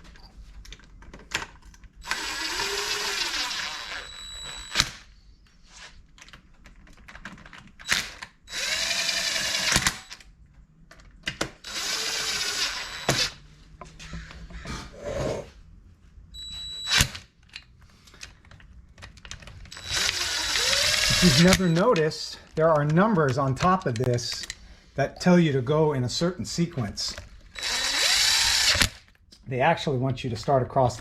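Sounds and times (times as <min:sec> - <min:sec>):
cordless drill running: 0:02.0 - 0:05.1, 0:07.8 - 0:10.1, 0:11.6 - 0:13.4, 0:19.7 - 0:21.9, 0:27.5 - 0:29.0
tools and parts clicking: 0:16.8 - 0:24.6.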